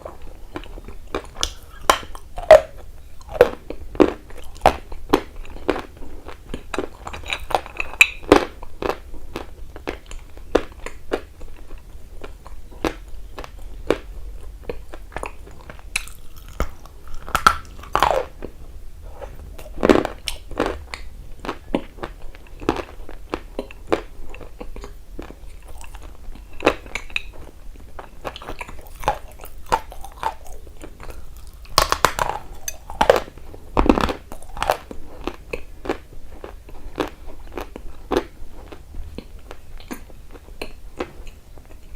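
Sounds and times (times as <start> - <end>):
crunchy biting and chewing: 0.0 - 41.9.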